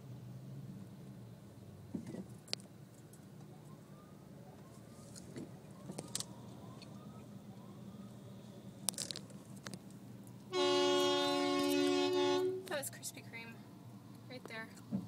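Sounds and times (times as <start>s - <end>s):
car driving in traffic: 0.0s - 15.0s
car horn blast: 10.5s - 12.7s.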